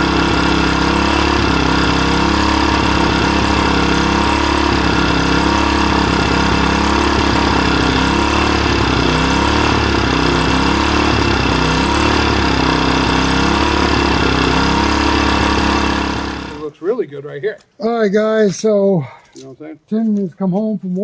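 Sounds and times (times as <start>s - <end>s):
small gas engine running: 0.0s - 16.8s.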